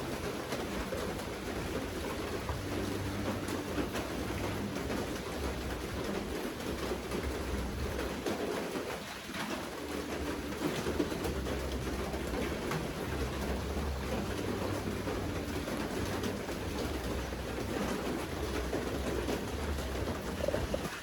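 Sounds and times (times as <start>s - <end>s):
rain drops ticking: 0.0s - 21.0s
steady rain rumble: 0.0s - 21.0s.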